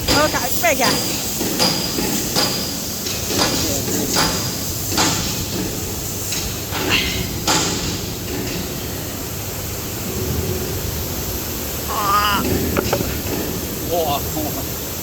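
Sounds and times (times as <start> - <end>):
sharp knocks: 0.1 - 8.7, 12.4 - 13.6.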